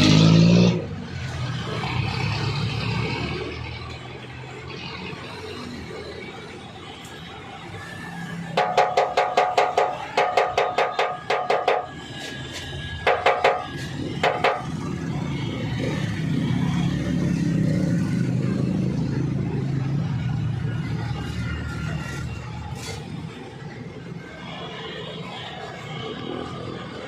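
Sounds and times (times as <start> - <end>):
passing vehicle rumble: 0.0 - 27.0
hammer taps on ringing metal: 8.6 - 12.0.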